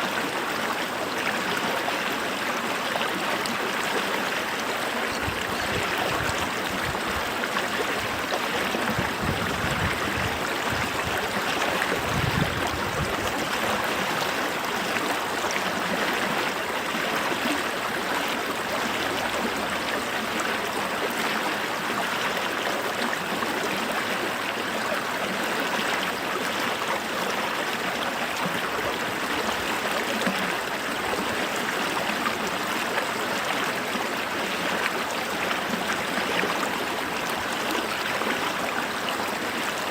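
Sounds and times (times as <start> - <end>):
creek water flowing: 0.0 - 39.9.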